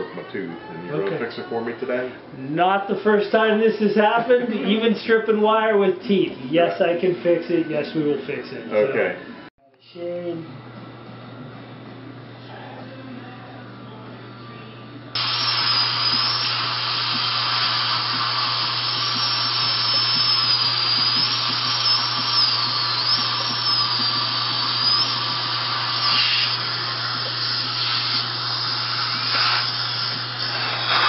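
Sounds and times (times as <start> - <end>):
dental drill whining: 15.2 - 31.0
hissing water spray: 15.2 - 31.0.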